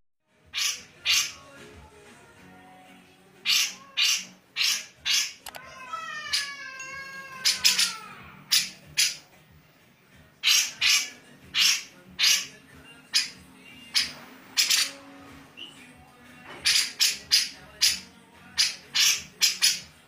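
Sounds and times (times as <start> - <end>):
bird rasping calls: 0.5 - 1.4, 3.4 - 5.4, 6.2 - 9.3, 10.4 - 15.7, 16.6 - 20.0.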